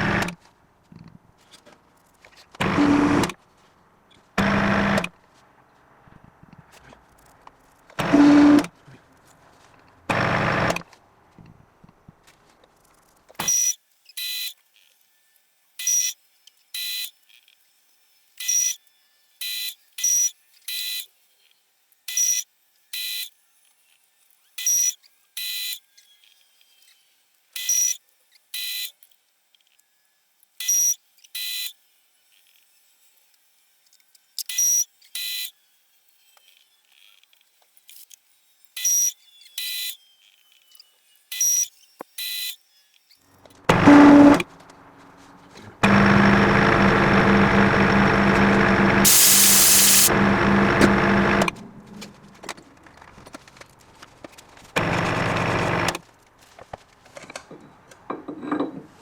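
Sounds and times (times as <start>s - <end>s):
electronic buzzer beeping: 43.7s - 44.4s, 45.8s - 51.6s.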